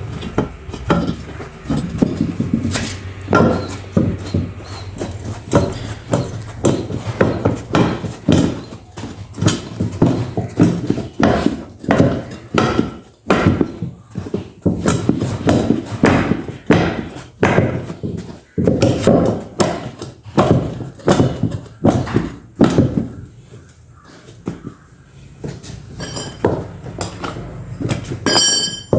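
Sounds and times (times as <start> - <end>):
hard knocks on motorcycle wheel: 5.5 - 23.2.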